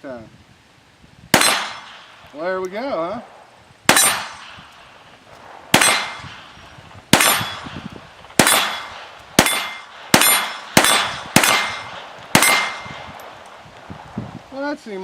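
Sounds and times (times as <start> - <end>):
pistol shots with ringing echo: 1.3 - 2.3, 3.1 - 5.0, 5.6 - 13.5.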